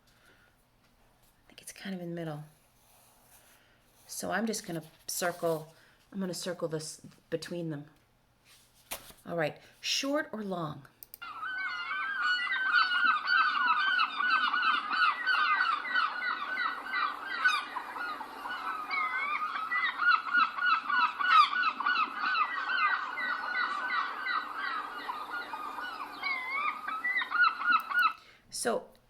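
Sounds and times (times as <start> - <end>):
flock of gulls calling: 11.2 - 28.2.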